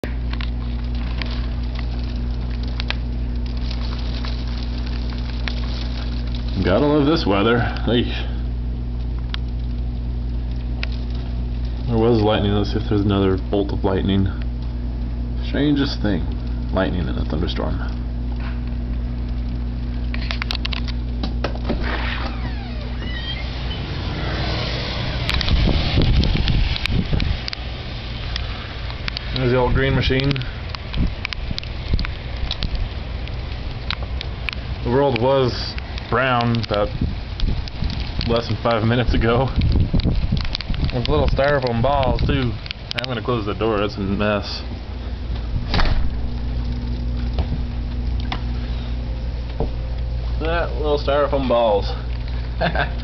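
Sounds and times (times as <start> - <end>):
steady low hum: 0.0 - 53.0
snow pellets pattering: 0.2 - 14.4, 21.8 - 53.0
wind buffeting microphone: 22.6 - 33.8, 36.5 - 42.9
wind rushing: 23.4 - 27.5
scattered clicks: 25.2 - 25.6, 28.3 - 43.3.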